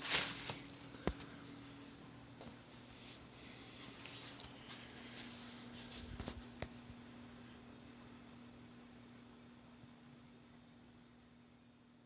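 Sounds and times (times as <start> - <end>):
faint steady hum: 0.0 - 12.0
soft handling scuffs: 3.8 - 6.9.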